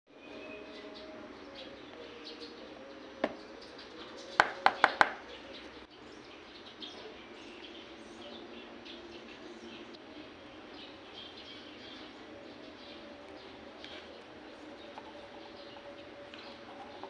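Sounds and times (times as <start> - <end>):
birds chirping faintly: 0.1 - 17.0
sharp taps: 4.4 - 5.2.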